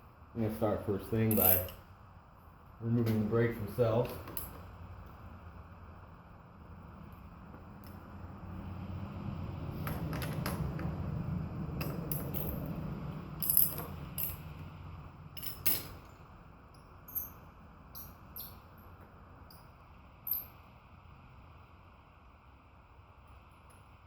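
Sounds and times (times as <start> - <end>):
wrench clicking on metal bolts: 1.3 - 1.8
low rumbling handling noise: 9.4 - 20.5.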